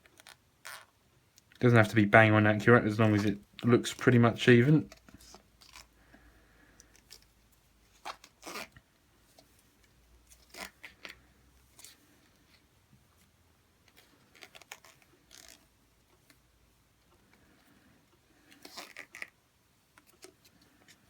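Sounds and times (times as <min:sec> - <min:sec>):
grip tape rustling and scraping: 0:00.0 - 0:21.0.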